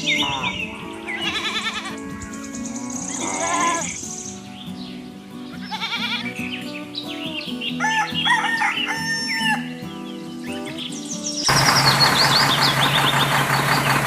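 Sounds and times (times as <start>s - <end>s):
music: 0.0s - 11.5s
rooster crowing: 7.8s - 9.7s
loud steady mechanical noise: 11.5s - 14.0s.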